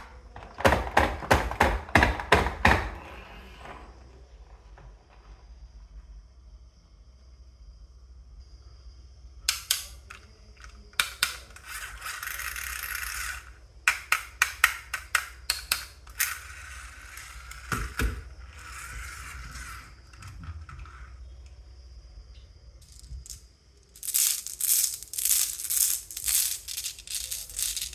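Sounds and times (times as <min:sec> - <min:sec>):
marbles clacking: 0:09.5 - 0:19.8, 0:22.8 - 0:27.9
marbles rolling on wooden track: 0:09.5 - 0:21.6, 0:22.8 - 0:27.9.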